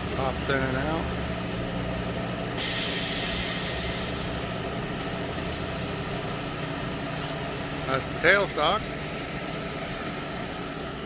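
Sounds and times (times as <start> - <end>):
loud hiss of released air: 2.6 - 5.4.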